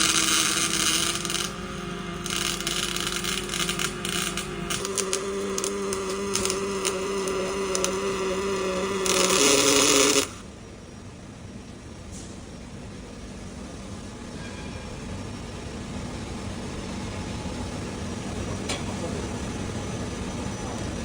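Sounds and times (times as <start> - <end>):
welding arc hiss: 0.0 - 10.4
welding spatter crackles: 0.0 - 10.4
welding electrical buzz: 0.0 - 10.5.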